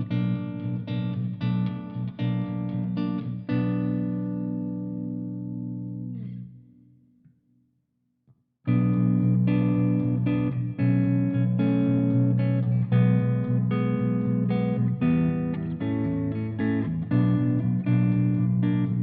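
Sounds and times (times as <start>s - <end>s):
electric guitar chords: 0.0s - 7.0s, 8.7s - 19.0s.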